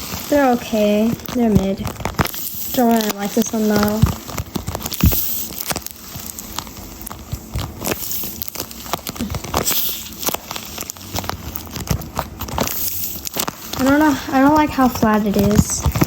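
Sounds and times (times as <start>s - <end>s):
paper crinkling and crackling: 0.0s - 16.0s.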